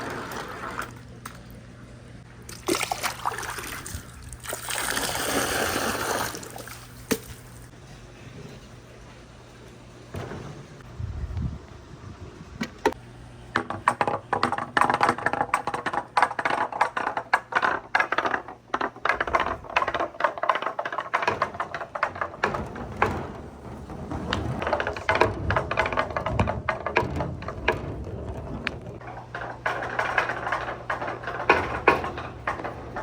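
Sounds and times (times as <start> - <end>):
marbles rolling on wooden run: 13.6 - 33.0.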